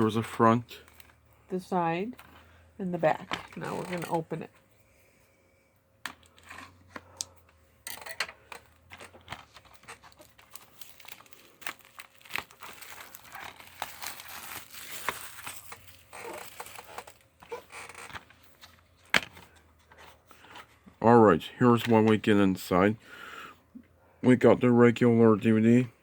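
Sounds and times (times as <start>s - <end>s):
plastic wrap crinkling and tearing: 8.0s - 20.5s.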